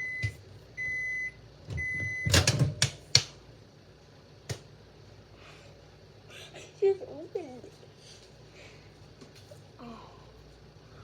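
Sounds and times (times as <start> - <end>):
microwave oven beeping: 0.0 - 3.2.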